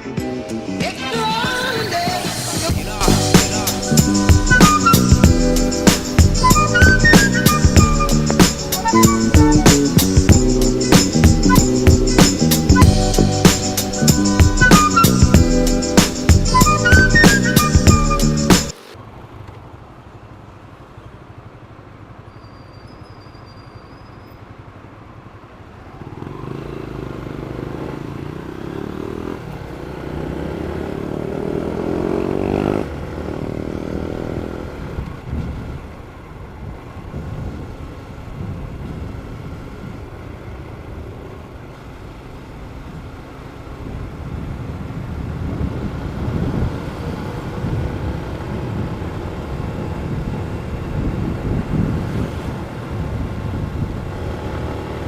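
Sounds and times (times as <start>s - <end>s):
motorcycle engine revving: 26.0s - 35.4s, 45.4s - 55.0s.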